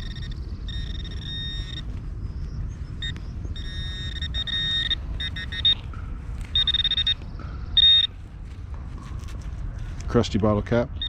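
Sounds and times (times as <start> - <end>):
metal detector beeps: 0.0 - 2.1, 3.0 - 8.2
low rumble: 0.0 - 10.1.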